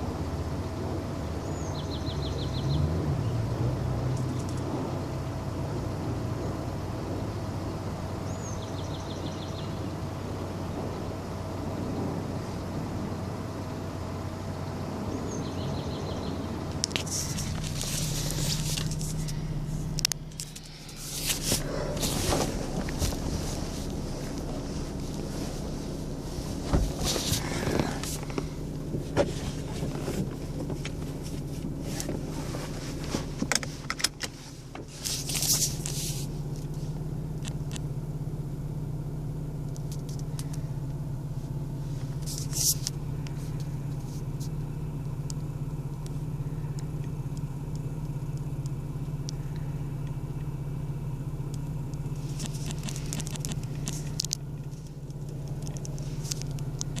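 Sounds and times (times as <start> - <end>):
low engine-like hum: 0.0 - 57.0
rustling bursts: 17.0 - 36.6.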